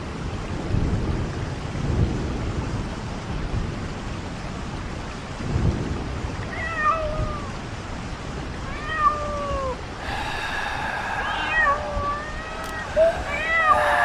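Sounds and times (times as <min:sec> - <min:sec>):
cat meowing: 0:08.7 - 0:09.8, 0:11.2 - 0:14.0
background hiss: 0:09.7 - 0:14.0.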